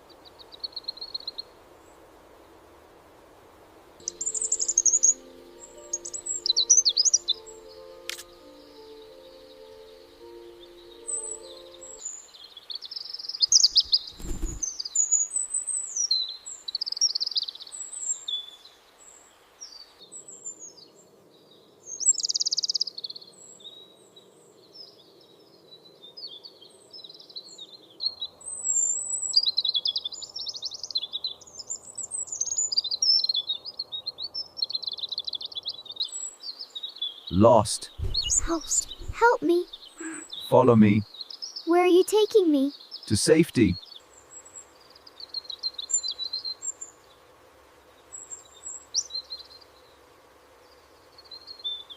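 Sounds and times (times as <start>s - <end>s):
faint outdoor ambience: 0.0s - 51.9s
songbirds chirping: 0.0s - 51.9s
low thump: 38.0s - 39.1s.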